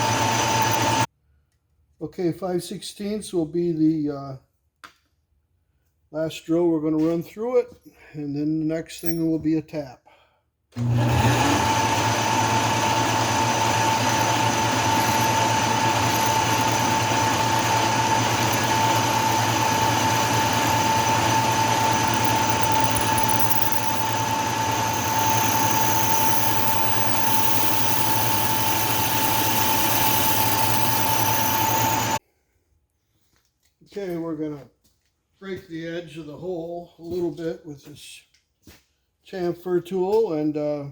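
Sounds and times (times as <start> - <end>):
lathe drilling with high whine: 0.0 - 1.1, 10.8 - 32.2.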